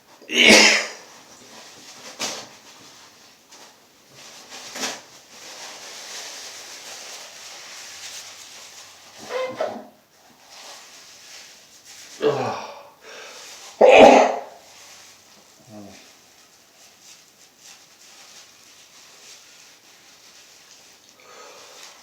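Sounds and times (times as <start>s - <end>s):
man sneezing: 0.3s - 1.0s, 12.2s - 12.9s, 13.8s - 14.6s
short voiced gasp: 12.2s - 13.4s
hissing breath: 12.2s - 14.6s, 21.2s - 22.0s.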